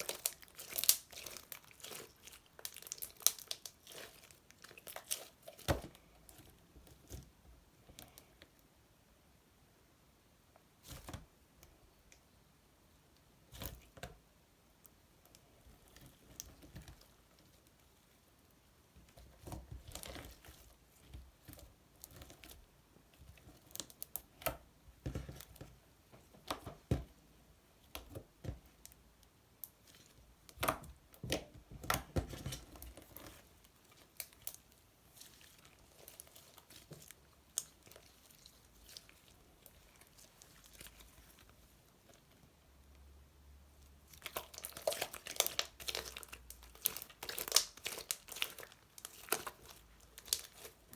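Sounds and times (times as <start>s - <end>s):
slime squelching and crackling: 0.0s - 7.1s, 19.0s - 24.6s, 29.6s - 42.4s, 43.8s - 50.9s.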